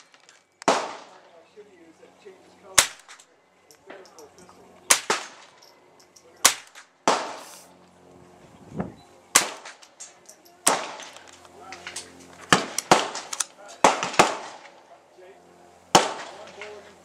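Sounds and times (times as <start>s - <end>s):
gunshots: 0.0s - 1.3s, 2.8s - 3.3s, 4.9s - 5.6s, 6.4s - 7.5s, 9.3s - 10.0s, 10.6s - 11.2s, 12.5s - 14.8s, 15.9s - 16.8s.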